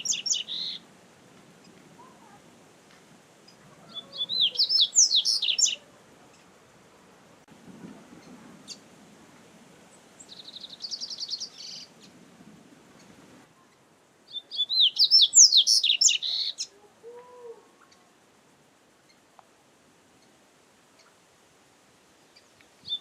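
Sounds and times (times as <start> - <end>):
bird singing: 0.0 - 0.9, 3.4 - 6.4, 10.2 - 12.2, 13.7 - 16.8, 22.3 - 23.0.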